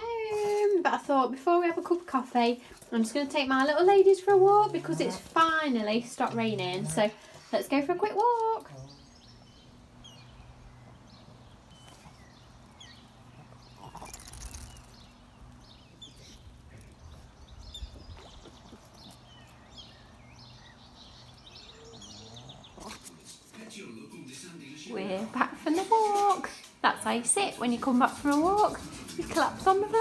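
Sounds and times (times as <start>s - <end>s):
birds chirping: 0.0s - 30.0s.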